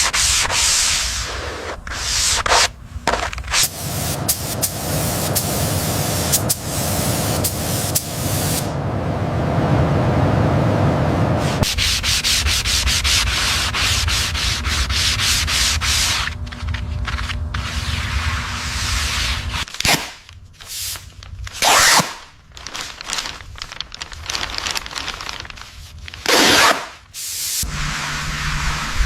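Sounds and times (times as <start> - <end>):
sanding car bodywork: 0.0 - 2.7, 3.5 - 8.7, 11.4 - 19.7.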